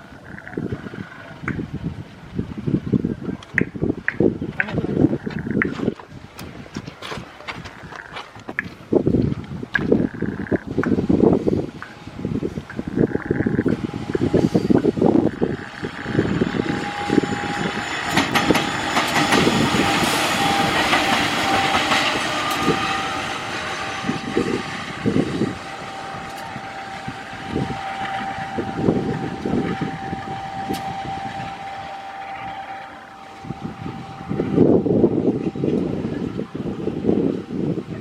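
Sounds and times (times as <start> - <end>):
steady high tone: 11.0 - 38.0
train wheels knocking on rail joints: 15.7 - 26.4.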